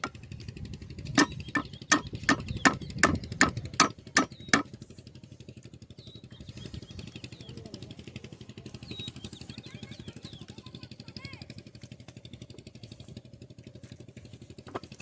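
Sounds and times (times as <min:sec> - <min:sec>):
small engine chugging: 0:00.0 - 0:15.0
sharp evenly spaced knocks: 0:01.0 - 0:04.8.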